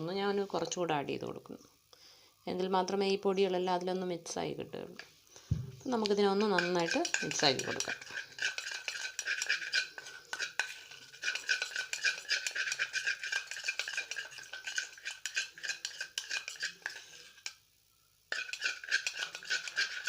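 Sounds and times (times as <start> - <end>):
utensil stirring in small container: 5.8 - 17.6, 18.3 - 20.0.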